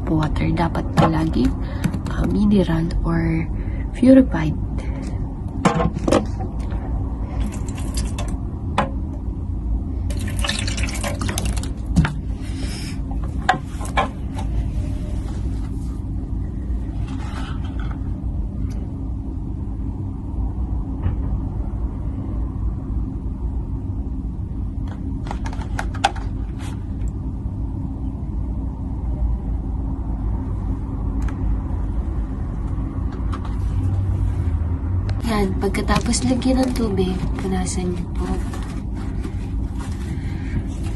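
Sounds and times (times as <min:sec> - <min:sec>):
water pouring into plastic tank: 0:07.3 - 0:08.4, 0:10.1 - 0:12.1
low rumble: 0:11.7 - 0:40.9.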